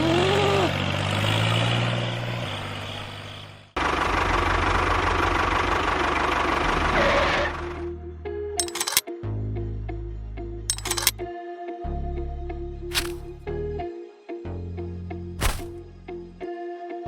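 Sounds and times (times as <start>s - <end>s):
engine running: 0.0s - 7.9s, 8.6s - 9.0s, 10.7s - 11.2s, 12.9s - 13.4s, 15.4s - 15.8s.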